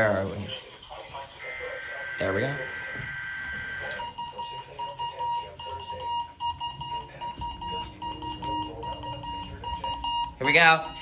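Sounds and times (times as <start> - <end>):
radio alarm beeping rapidly: 1.5 - 11.0.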